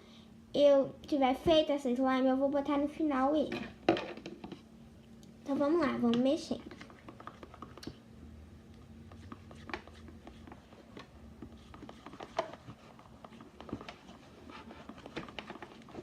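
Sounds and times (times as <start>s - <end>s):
utensil scraping and tapping pot: 6.1s - 8.0s, 9.0s - 16.0s.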